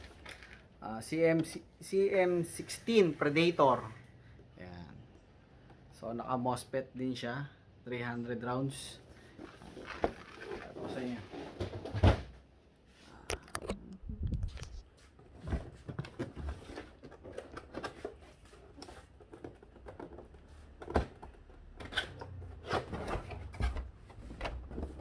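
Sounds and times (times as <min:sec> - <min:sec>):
rustling packaging: 0:09.2 - 0:11.7
clicks and knocks of handling: 0:15.4 - 0:25.0.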